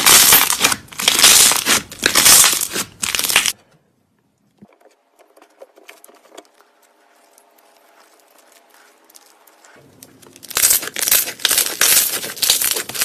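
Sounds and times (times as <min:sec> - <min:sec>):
putty crackling and popping: 0:00.0 - 0:03.6, 0:07.3 - 0:13.0.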